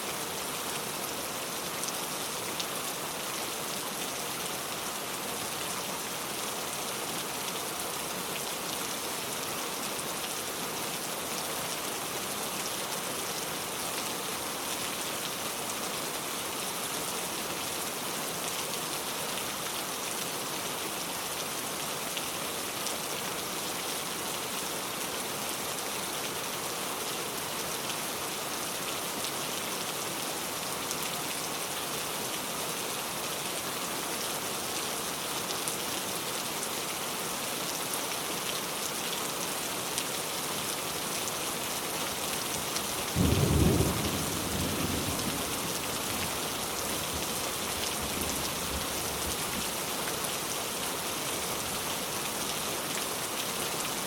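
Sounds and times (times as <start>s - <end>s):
heavy rain falling: 0.0s - 54.0s.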